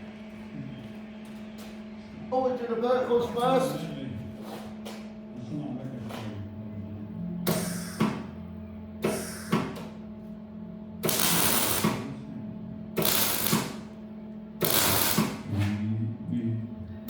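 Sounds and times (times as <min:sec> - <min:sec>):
steady low hum: 0:00.0 - 0:17.0
welding arc crackling hiss: 0:07.5 - 0:08.2, 0:11.0 - 0:12.0, 0:13.0 - 0:13.9, 0:14.6 - 0:15.5.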